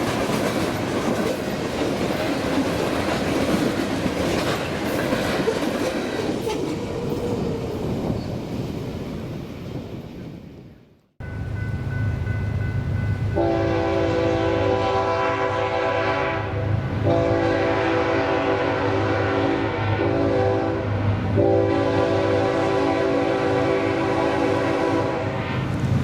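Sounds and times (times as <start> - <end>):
locomotive air horn blasts: 13.4 - 25.6.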